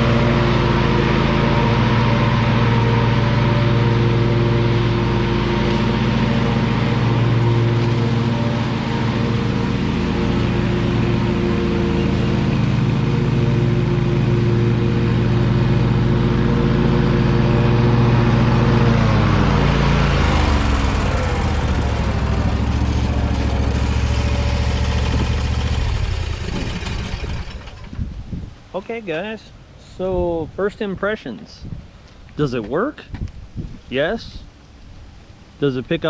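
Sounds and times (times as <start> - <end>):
lawn mower engine running: 0.0 - 28.6.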